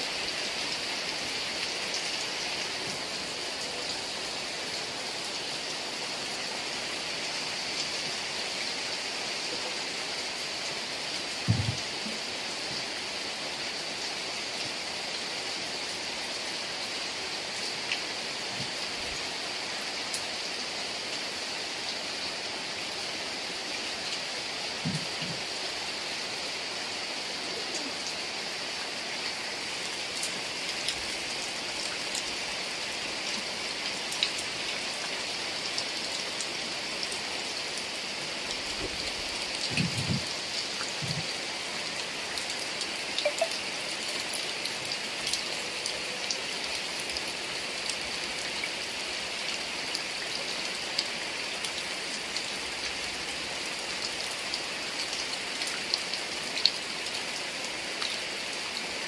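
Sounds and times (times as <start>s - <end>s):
heavy rain: 0.0s - 59.0s
raindrops clicking on surfaces: 11.4s - 12.2s, 24.8s - 25.6s, 33.2s - 35.2s, 38.5s - 45.5s.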